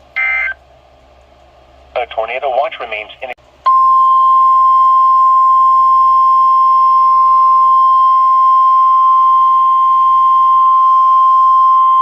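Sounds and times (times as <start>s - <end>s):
high-pitched alarm tone: 0.2s - 0.6s.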